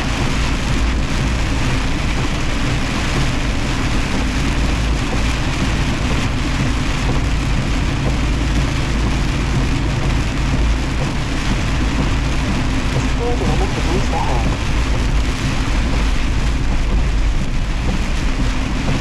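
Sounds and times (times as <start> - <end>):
rain hissing: 0.0 - 19.0
truck engine drone: 0.0 - 19.0.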